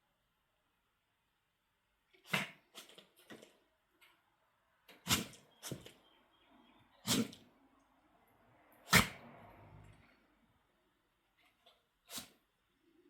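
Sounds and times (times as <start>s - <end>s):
pet sneezing: 2.2s - 3.0s, 4.9s - 5.9s, 7.0s - 7.4s, 8.9s - 9.3s, 12.1s - 12.4s.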